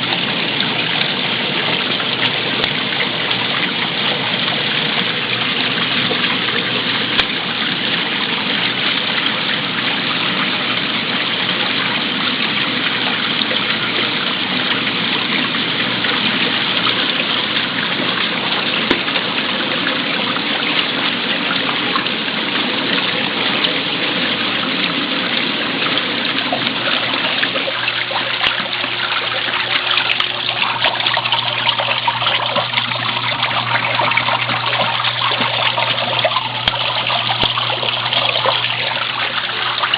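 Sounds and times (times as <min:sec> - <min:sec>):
washing machine low hum: 0:00.0 - 0:39.9
water gushing into tub: 0:00.0 - 0:39.9.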